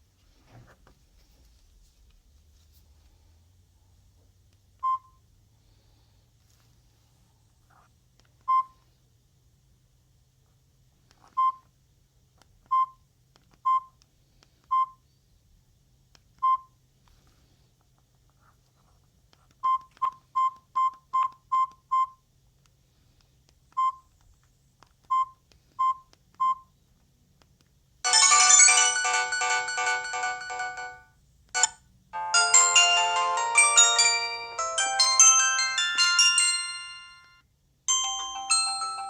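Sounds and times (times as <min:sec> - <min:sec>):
phone key press beeps: 0:08.5 - 0:08.8, 0:11.3 - 0:11.7, 0:13.6 - 0:14.0, 0:16.4 - 0:16.7, 0:19.6 - 0:22.2, 0:23.7 - 0:24.1, 0:25.0 - 0:26.7
polyphonic ringtone melodies: 0:28.0 - 0:39.0.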